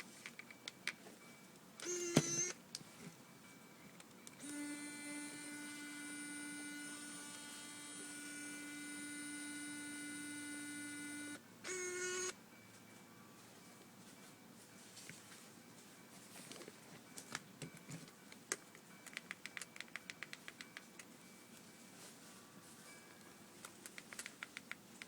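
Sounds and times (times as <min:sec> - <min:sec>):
camera lens motor whining: 0:01.8 - 0:02.6, 0:04.4 - 0:12.4.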